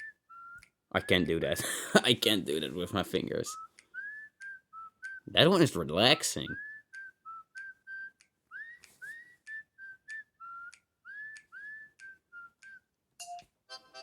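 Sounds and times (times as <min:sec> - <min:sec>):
whistled ringtone from phone speaker: 0:00.0 - 0:01.5, 0:06.6 - 0:13.4.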